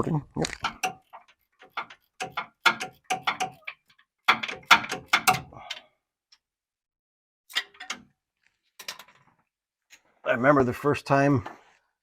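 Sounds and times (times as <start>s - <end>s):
hand ratchet clicking: 0.6s - 5.8s.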